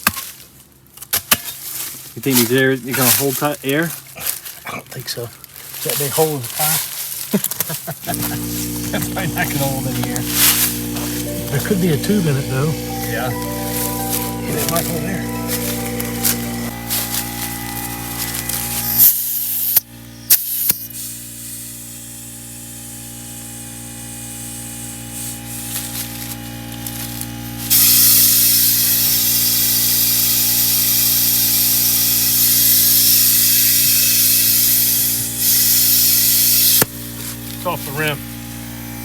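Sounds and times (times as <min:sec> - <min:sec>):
compressed air hissing: 0:08.0 - 0:26.2, 0:27.6 - 0:37.8.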